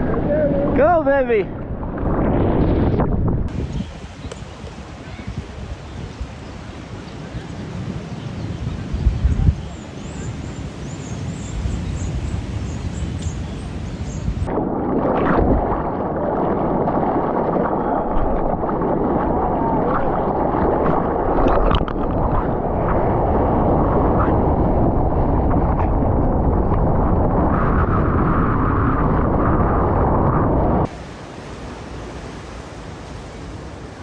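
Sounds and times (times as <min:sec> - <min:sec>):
muffled surf and wind rush: 0:00.0 - 0:34.0
ocean hiss: 0:30.9 - 0:34.0.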